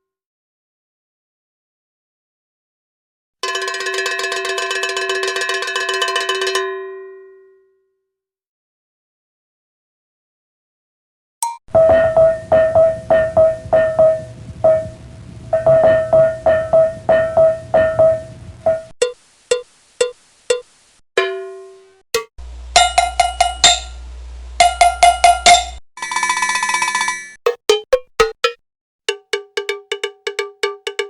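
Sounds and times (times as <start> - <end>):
metallic cowbell strikes: 11.4 - 14.3, 22.2 - 24.0, 24.6 - 31.0
low bass drone: 11.7 - 18.9, 22.4 - 25.8
rapid buzzing rattle: 22.4 - 25.8.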